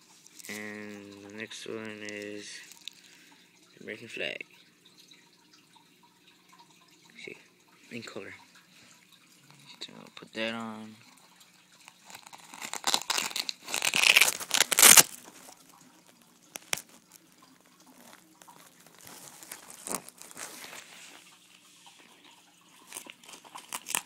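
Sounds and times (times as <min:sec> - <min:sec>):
fabric vest rustling: 0:12.1 - 0:15.6, 0:17.9 - 0:21.4.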